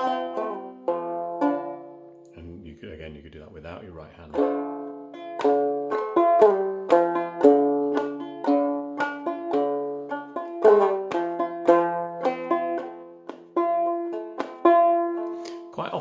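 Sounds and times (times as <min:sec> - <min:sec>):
clawhammer banjo playing: 0:00.0 - 0:16.0.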